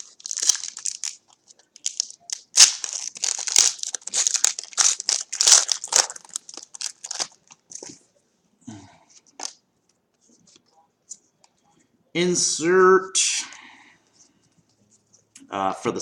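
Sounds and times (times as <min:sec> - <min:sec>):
wrapper tearing and crinkling: 0:00.0 - 0:07.9, 0:09.4 - 0:09.6.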